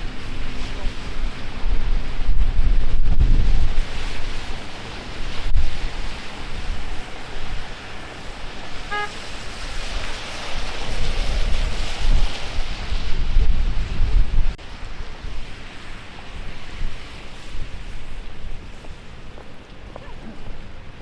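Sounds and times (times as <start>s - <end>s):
heavy rain hissing on street: 0.0s - 21.0s
wind buffeting microphone: 0.0s - 21.0s
car horn toot: 8.9s - 9.3s.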